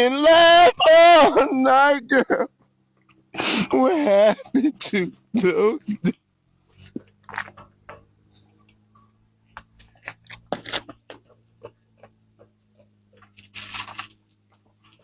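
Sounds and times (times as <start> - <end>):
small clicks and rustles: 2.5 - 3.4, 6.6 - 15.0
man sobbing and sniffling: 3.4 - 6.1.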